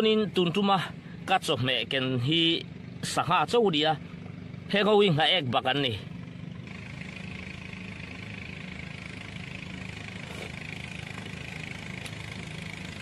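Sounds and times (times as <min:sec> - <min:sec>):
engine idling hum: 0:00.0 - 0:13.0
steady higher buzz: 0:04.9 - 0:13.0.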